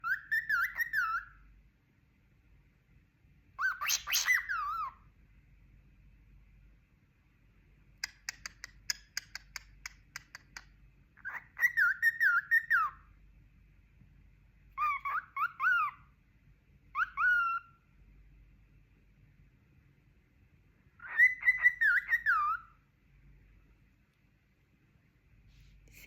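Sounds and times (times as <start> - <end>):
cockatiel whistling: 0.0 - 1.4, 3.6 - 5.0, 11.2 - 13.0, 14.8 - 16.0, 16.9 - 17.8, 21.0 - 22.8
cockatiel clicks: 8.0 - 10.8.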